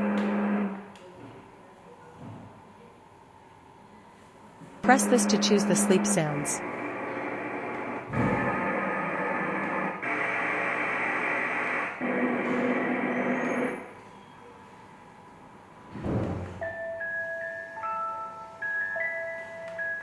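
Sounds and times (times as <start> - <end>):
white noise machine sleep sounds: 4.8 - 20.0
chiming mallet-like melody: 16.6 - 20.0.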